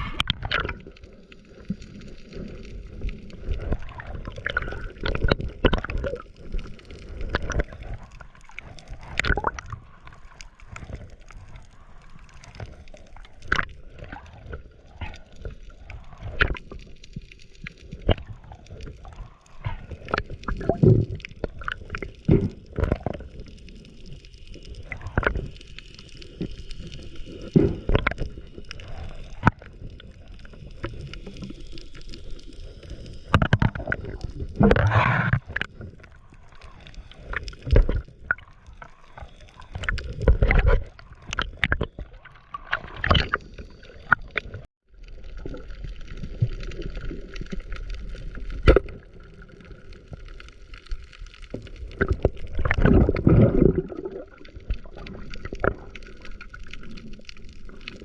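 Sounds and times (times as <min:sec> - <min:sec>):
water sloshing and gurgling: 0:00.0 - 0:58.0.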